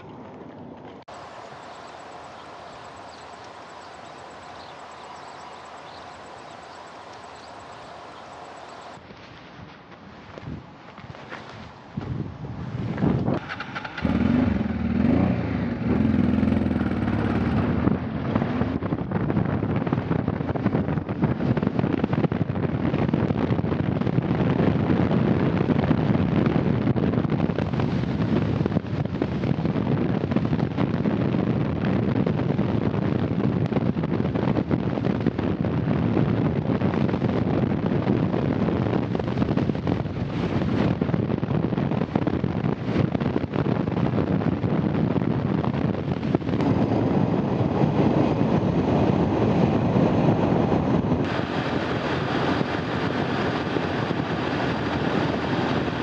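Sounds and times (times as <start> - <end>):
rushing wind noise: 0.0 - 56.0
motorcycle engine: 13.2 - 19.0.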